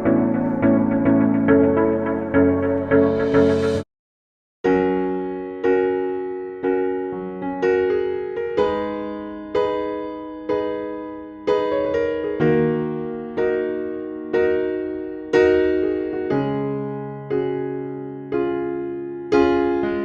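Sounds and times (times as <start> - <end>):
slow electric piano chords: 0.0 - 3.8.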